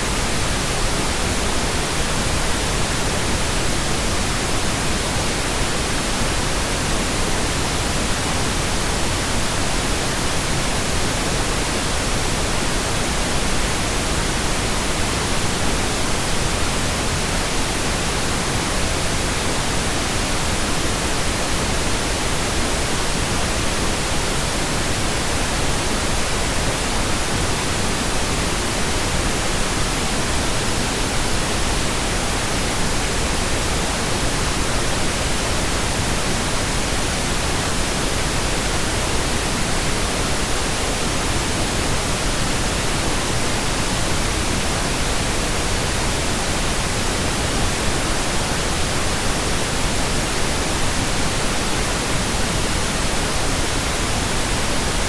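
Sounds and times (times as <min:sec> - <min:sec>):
steady pink noise hiss: 0:00.0 - 0:55.0.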